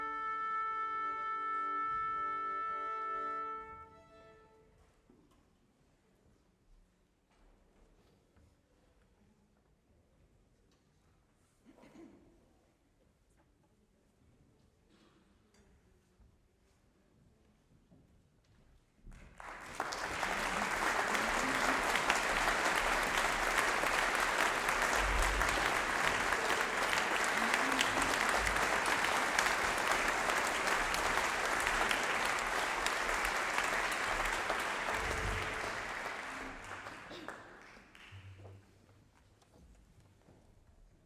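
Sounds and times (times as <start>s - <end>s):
audience applauding: 19.1s - 38.3s.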